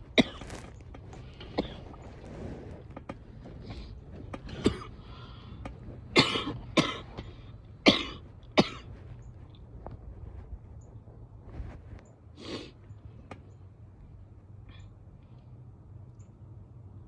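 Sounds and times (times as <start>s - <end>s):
woman's wet coughs: 0.2s - 0.5s, 4.6s - 4.9s, 6.2s - 8.9s.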